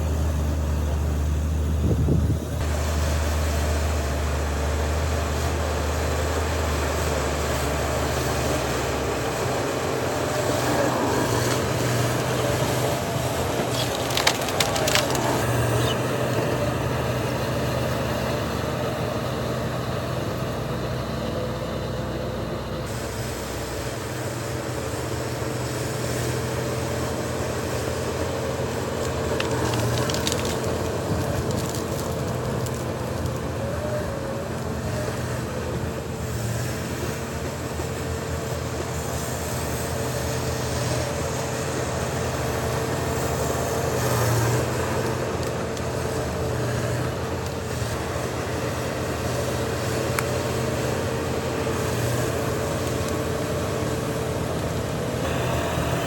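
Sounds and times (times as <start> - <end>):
diesel machinery engine drone: 0.0 - 56.0
steady whine: 54.7 - 56.0.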